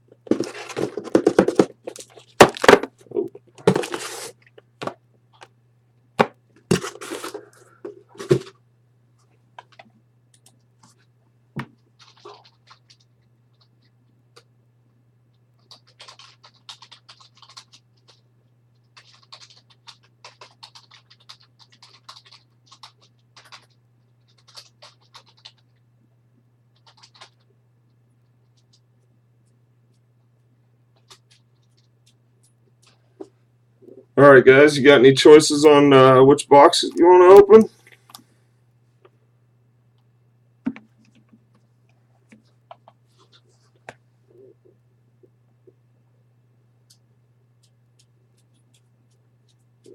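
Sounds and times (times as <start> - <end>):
packaging scratching and tearing: 3.7 - 4.4.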